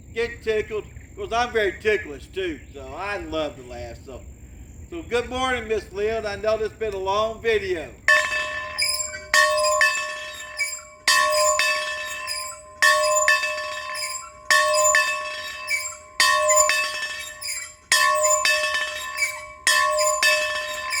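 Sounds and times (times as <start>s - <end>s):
bell ringing: 8.1s - 21.0s.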